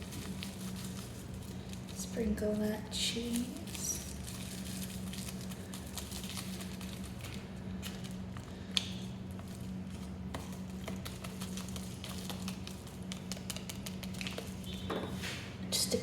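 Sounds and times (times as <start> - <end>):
steady low hum: 0.0 - 16.0
powder packet shaken and tapped: 3.3 - 14.8.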